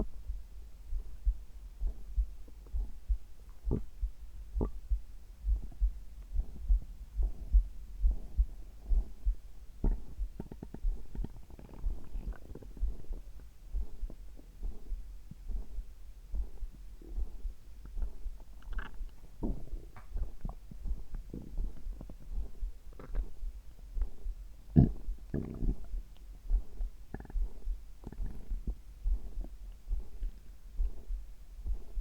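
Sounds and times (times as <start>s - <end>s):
heartbeat thudding: 0.0s - 32.0s
stomach gurgles: 2.7s - 15.6s, 16.4s - 31.1s
crackly bubbling: 18.4s - 23.4s, 24.7s - 26.3s, 27.1s - 28.8s.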